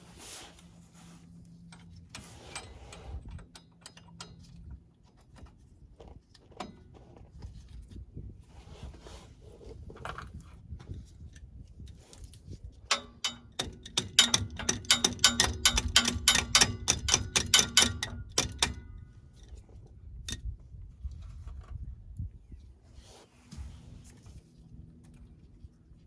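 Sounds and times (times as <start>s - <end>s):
ratchet tool clicking: 12.9s - 18.8s.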